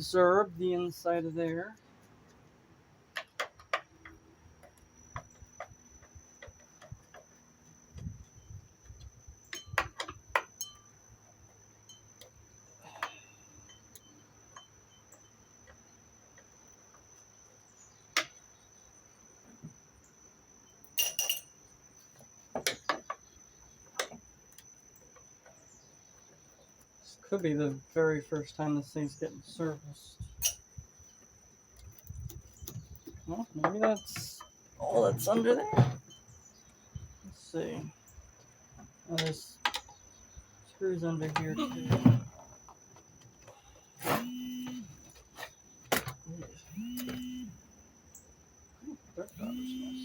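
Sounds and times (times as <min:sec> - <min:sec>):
tools and screws clinking: 0:08.2 - 0:17.1, 0:20.8 - 0:25.6, 0:30.4 - 0:36.8, 0:39.1 - 0:40.0, 0:49.3 - 0:50.0
faint steady high tone: 0:32.6 - 0:38.2, 0:40.6 - 0:42.4, 0:43.5 - 0:45.2, 0:46.3 - 0:50.0.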